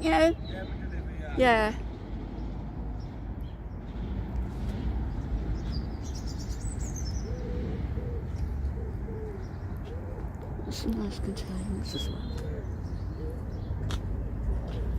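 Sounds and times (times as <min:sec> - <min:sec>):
low outdoor rumble: 0:00.0 - 0:14.9
pigeon cooing: 0:07.2 - 0:10.8, 0:12.0 - 0:13.7.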